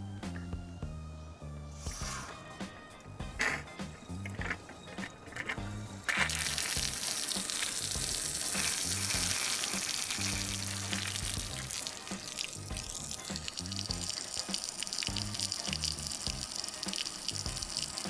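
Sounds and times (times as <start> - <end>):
music with plodding bass: 0.0 - 2.3, 3.1 - 4.6, 5.6 - 14.3, 15.1 - 16.6, 17.3 - 18.0
water rushing: 1.9 - 18.0.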